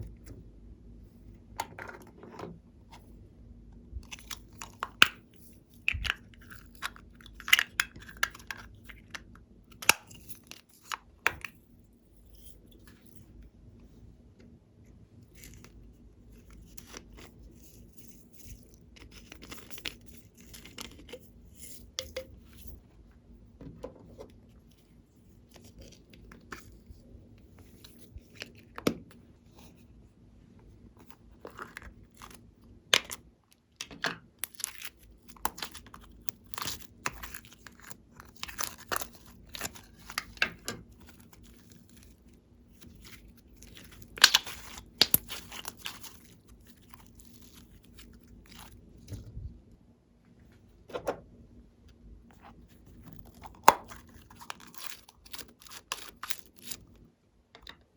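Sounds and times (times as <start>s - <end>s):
slime crackling and popping: 42.8s - 48.7s.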